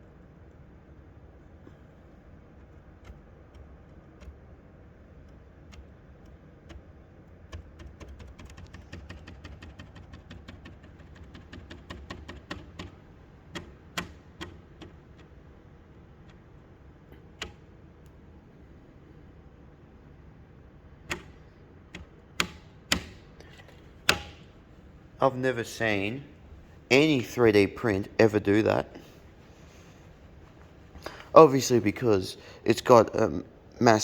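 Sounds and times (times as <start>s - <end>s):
clicks from handling a plastic print: 21.0s - 24.6s.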